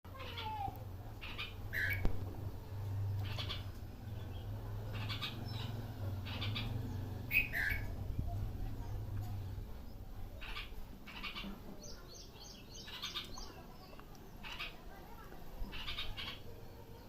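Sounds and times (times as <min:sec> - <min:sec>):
bulbul chirping: 0:01.2 - 0:02.1.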